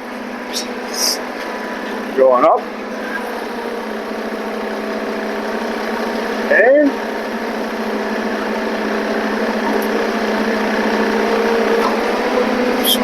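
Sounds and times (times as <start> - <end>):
forklift engine humming: 0.0 - 13.0.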